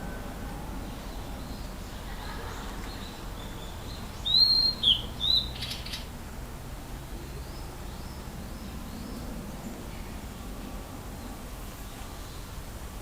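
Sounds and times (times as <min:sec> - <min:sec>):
bird whistling song: 0:03.4 - 0:06.0.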